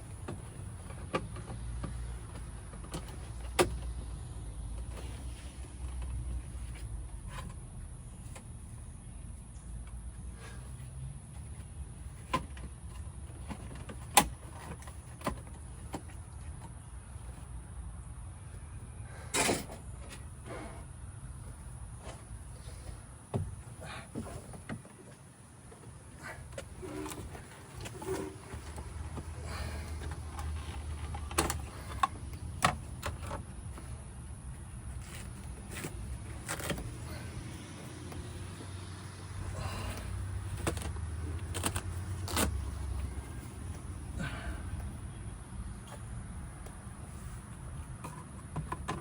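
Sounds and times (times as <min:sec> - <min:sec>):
clicks and knocks on car trim: 0:23.3 - 0:24.9.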